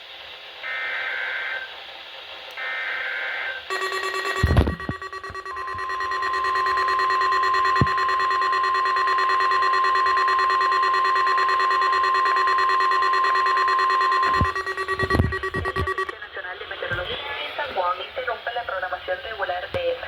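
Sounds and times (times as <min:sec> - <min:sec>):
steady high alarm tone: 0:03.7 - 0:16.3.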